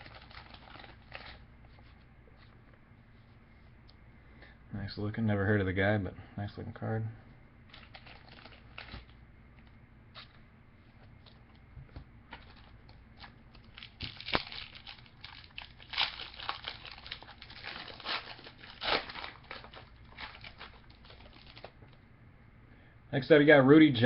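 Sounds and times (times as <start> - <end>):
wrapper tearing and crinkling: 0.0 - 1.4, 7.7 - 9.2, 12.3 - 21.8
sharp wrapper snap: 13.6 - 20.7.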